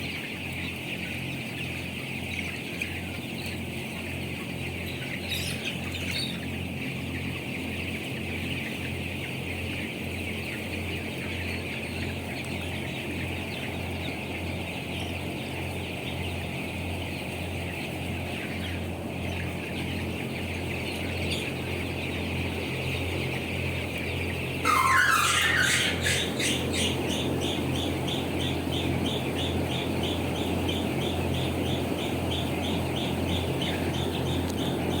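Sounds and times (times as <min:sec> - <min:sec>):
low electrical hum: 0:00.0 - 0:35.0
young birds calling: 0:00.0 - 0:35.0
rapid repeated chirping: 0:08.6 - 0:35.0
loud rising bird call: 0:24.6 - 0:27.0.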